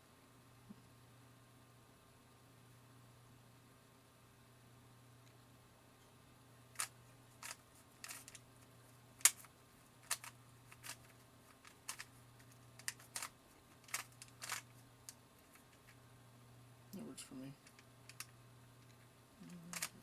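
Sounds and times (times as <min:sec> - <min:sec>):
puzzle cube clicking: 0:06.8 - 0:08.4, 0:09.2 - 0:16.0, 0:17.6 - 0:20.0.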